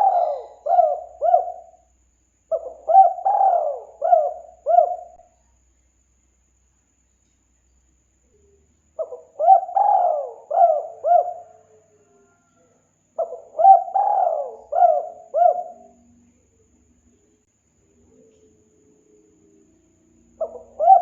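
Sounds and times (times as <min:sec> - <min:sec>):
dove cooing: 0:00.0 - 0:01.8, 0:02.5 - 0:05.3, 0:09.0 - 0:16.1, 0:20.4 - 0:21.0.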